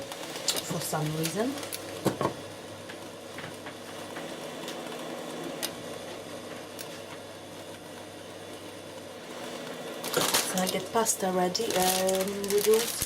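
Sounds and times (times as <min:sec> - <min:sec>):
food sizzling in a frying pan: 0:00.0 - 0:13.0
knock: 0:02.0 - 0:02.4.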